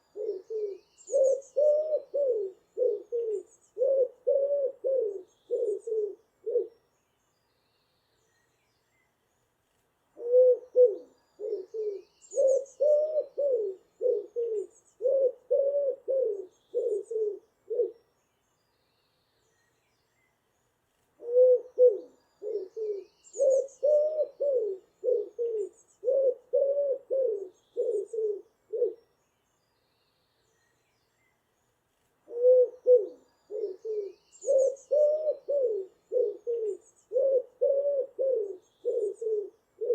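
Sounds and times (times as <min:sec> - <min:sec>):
faint high bird chirps: 0:00.0 - 0:04.1, 0:10.2 - 0:15.3, 0:16.3 - 0:26.4, 0:27.2 - 0:37.5, 0:38.3 - 0:39.9
pigeon cooing: 0:00.0 - 0:06.7, 0:10.2 - 0:18.0, 0:21.2 - 0:29.0, 0:32.3 - 0:39.9.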